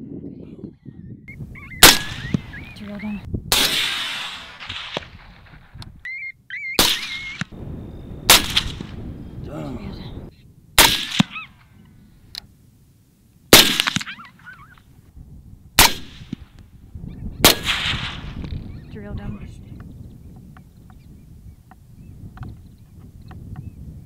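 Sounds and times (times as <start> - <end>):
suppressed rifle shots: 1.8 - 2.6, 3.5 - 5.7, 6.8 - 7.6, 8.3 - 9.0, 10.8 - 11.4, 13.5 - 14.2, 15.8 - 16.4, 17.4 - 18.6.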